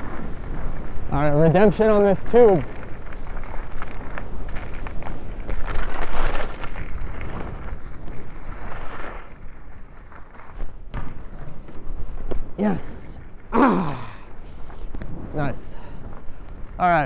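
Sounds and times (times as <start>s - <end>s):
skis scraping over snow: 0.0s - 10.7s.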